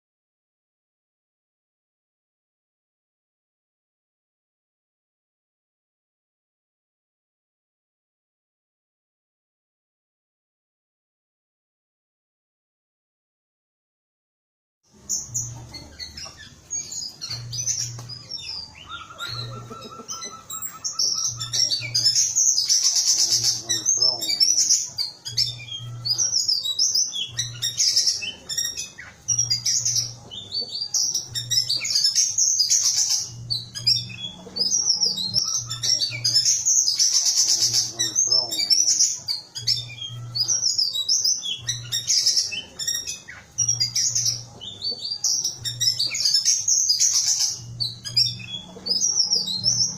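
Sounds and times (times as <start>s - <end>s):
thrush calling: 18.6s - 24.6s.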